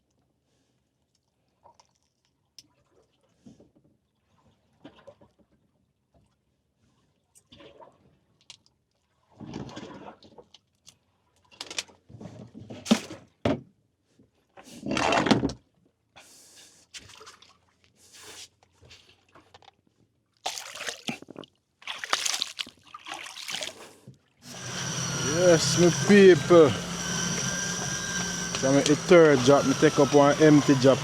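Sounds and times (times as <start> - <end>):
water splashing and pouring: 20.5 - 21.2, 21.8 - 23.8.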